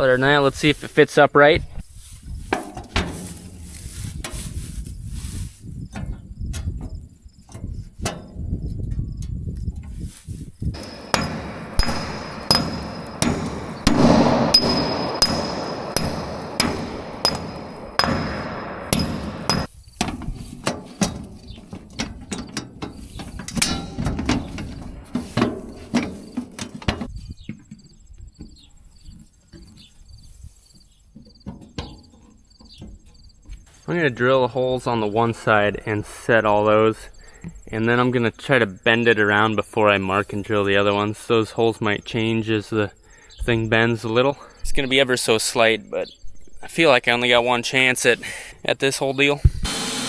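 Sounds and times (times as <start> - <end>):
high ringing tone: 10.8 - 19.7
sledgehammer striking concrete: 10.8 - 19.7.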